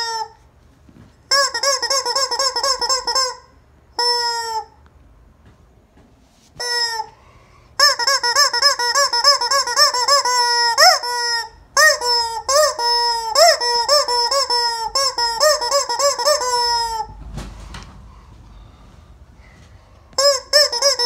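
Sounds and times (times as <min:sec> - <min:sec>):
rubber chicken toy squeaking: 0:00.0 - 0:00.4, 0:01.3 - 0:04.8, 0:06.6 - 0:07.1, 0:07.8 - 0:17.2, 0:20.2 - 0:21.0.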